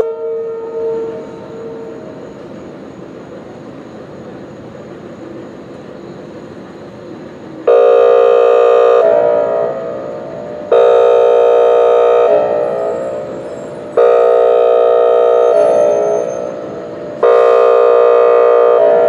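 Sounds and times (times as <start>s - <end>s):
warning siren blasts: 0.0s - 2.2s, 7.6s - 19.0s.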